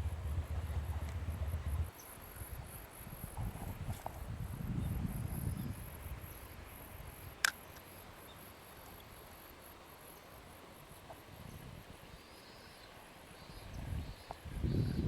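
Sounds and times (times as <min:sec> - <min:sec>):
low rumble: 0:00.0 - 0:01.9
insects chirping: 0:00.0 - 0:15.0.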